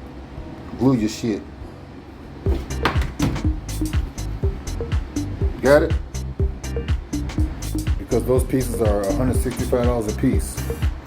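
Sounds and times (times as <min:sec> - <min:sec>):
deep bass drum hits: 0:02.5 - 0:10.0
background music with steady beat: 0:02.5 - 0:11.0
hi-hat ticks: 0:03.4 - 0:11.0.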